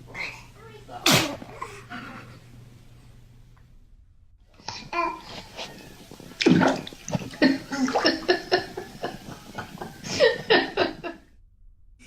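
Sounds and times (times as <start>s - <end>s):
baby babbling and chuckling: 1.4s - 2.5s, 4.6s - 6.1s.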